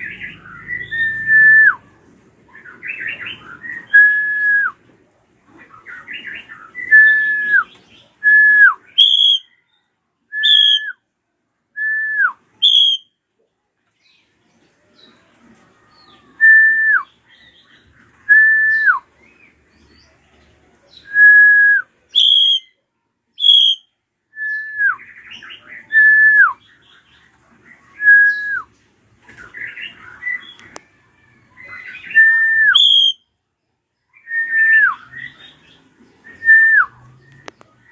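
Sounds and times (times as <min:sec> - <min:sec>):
bird whistled note: 0:09.0 - 0:09.5, 0:12.6 - 0:13.1, 0:21.5 - 0:22.7, 0:23.4 - 0:24.9, 0:32.1 - 0:33.3.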